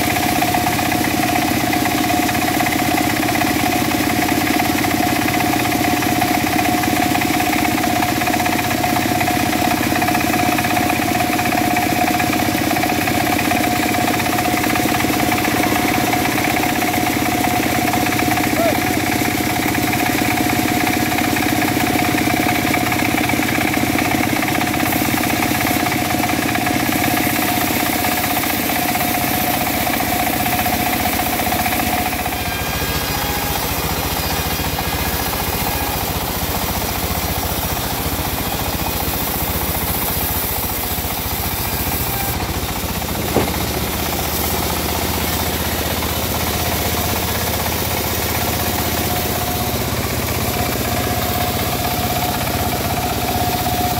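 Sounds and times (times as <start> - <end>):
engine running: 0.0 - 53.9
sharp knock: 43.2 - 44.0.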